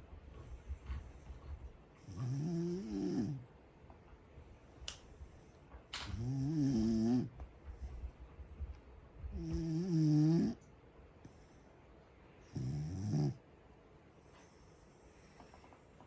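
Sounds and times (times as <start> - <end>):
dog snoring: 2.0 - 3.5, 6.0 - 8.1, 9.3 - 10.7, 12.4 - 13.4.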